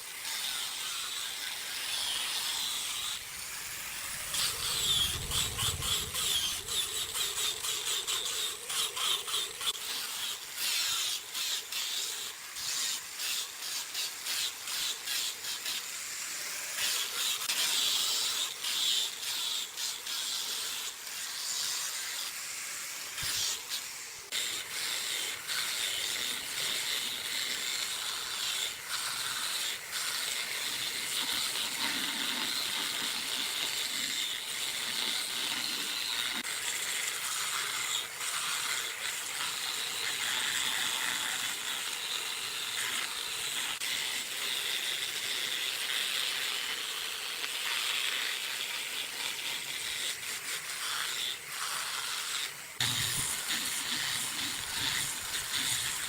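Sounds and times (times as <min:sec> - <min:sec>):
wood scraping hiss: 0:52.2 - 0:56.0.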